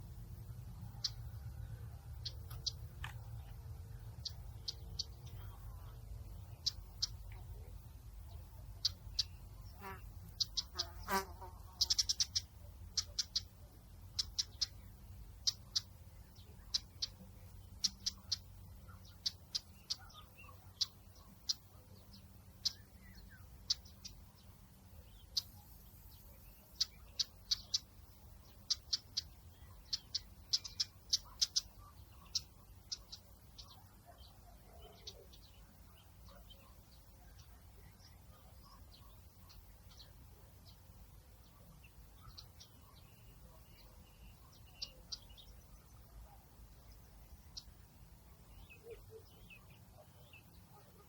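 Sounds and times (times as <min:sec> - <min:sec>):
steady low rumble: 0:00.0 - 0:09.7.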